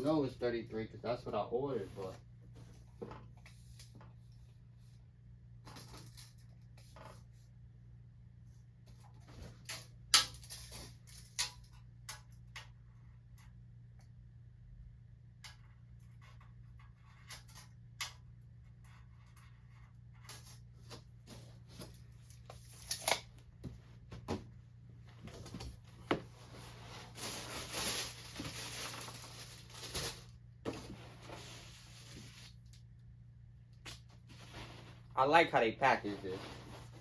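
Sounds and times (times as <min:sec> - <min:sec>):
cardboard and wrapping rustling: 0:01.7 - 0:02.8, 0:25.2 - 0:32.6, 0:34.2 - 0:37.0.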